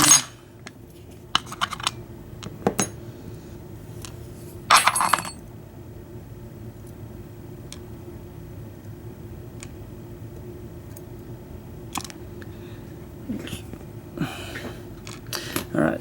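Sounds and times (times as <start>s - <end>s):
small metal parts clinking: 0.0s - 0.4s, 1.3s - 1.9s, 4.7s - 5.4s.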